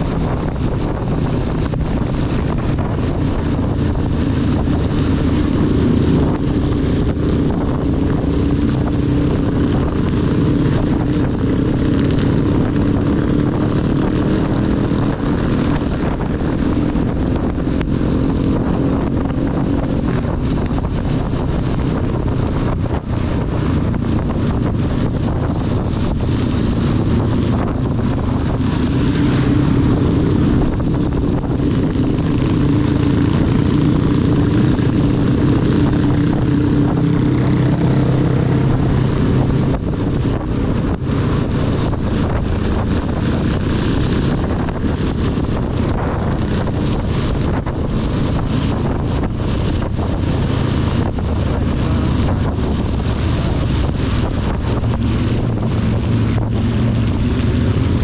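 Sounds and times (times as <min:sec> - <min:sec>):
motorcycle engine running: 0:00.0 - 0:58.0
wind on microphone: 0:00.0 - 0:58.0
heavy rain: 0:22.4 - 0:58.0.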